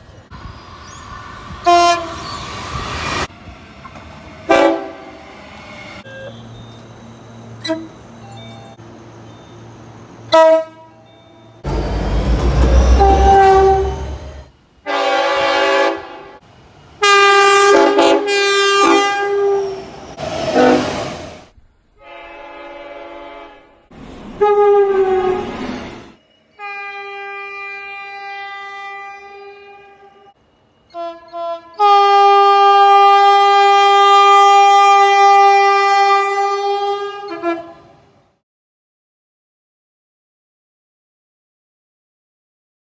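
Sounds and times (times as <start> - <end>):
train horn blasts: 1.6 - 2.3, 4.5 - 5.3, 7.6 - 8.0, 10.3 - 11.4, 12.2 - 16.4, 17.0 - 19.8, 20.6 - 21.0, 22.0 - 25.6, 26.5 - 38.0.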